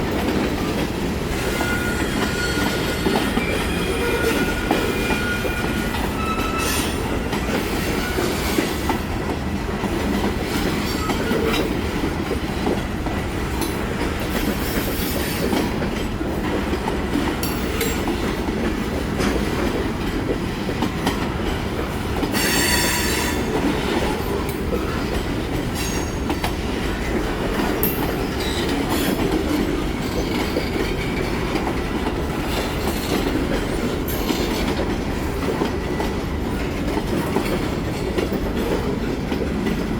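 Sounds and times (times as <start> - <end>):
freight train rumbling on rails: 0.0 - 39.9
train wheels clicking: 0.0 - 39.9
train wheel squeals: 1.3 - 9.0, 10.5 - 11.7, 22.3 - 24.0, 25.7 - 26.5, 27.8 - 31.4.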